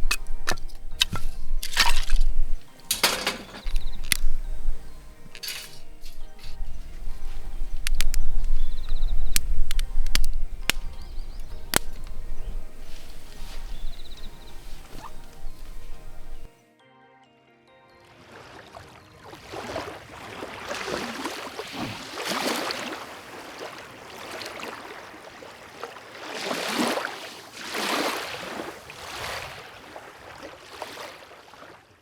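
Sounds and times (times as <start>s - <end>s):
small waves lapping on shore: 18.2s - 32.0s.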